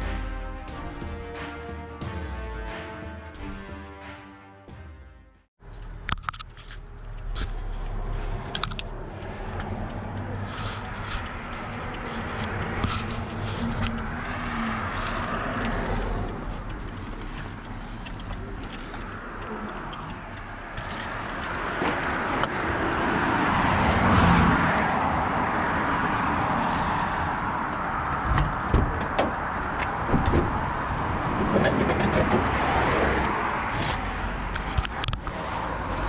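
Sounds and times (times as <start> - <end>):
sharp clicks and rattles: 5.6 - 24.9, 33.7 - 36.0
road vehicle rushing: 5.6 - 36.0.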